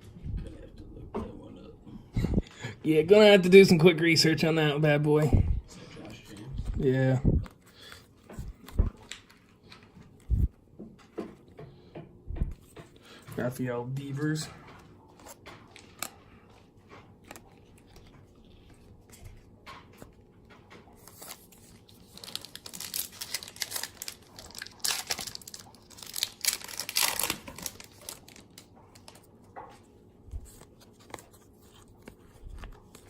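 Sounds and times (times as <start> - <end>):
foil wrapper tearing and crinkling: 21.1 - 29.2.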